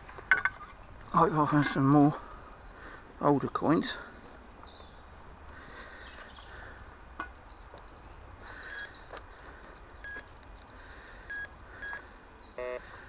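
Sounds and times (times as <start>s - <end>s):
faint outdoor hiss: 0.0s - 13.0s
metal detector beeps: 10.0s - 10.3s, 11.3s - 12.8s.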